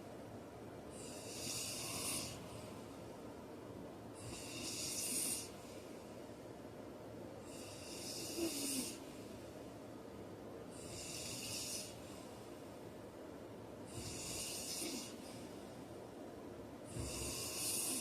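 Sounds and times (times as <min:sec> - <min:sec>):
man snoring: 0:01.0 - 0:02.5, 0:04.2 - 0:05.6, 0:07.5 - 0:09.0, 0:10.8 - 0:12.0, 0:13.9 - 0:15.2, 0:16.9 - 0:18.0.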